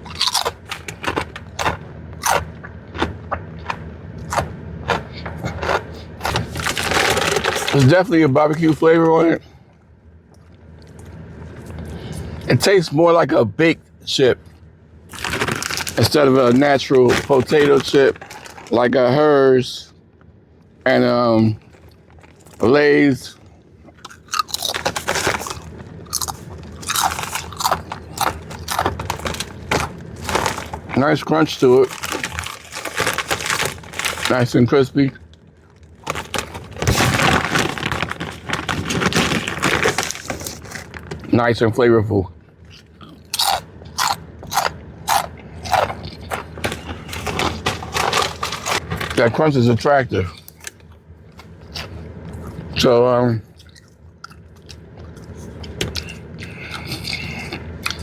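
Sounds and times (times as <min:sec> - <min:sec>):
potato chip crunching: 0:00.0 - 0:08.9, 0:15.1 - 0:18.9, 0:23.9 - 0:41.3, 0:42.7 - 0:49.4.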